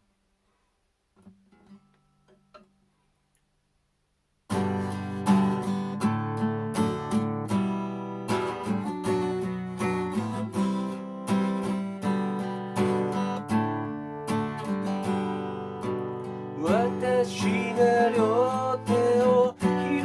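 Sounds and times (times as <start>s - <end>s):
acoustic guitar strumming chords: 4.5s - 20.0s.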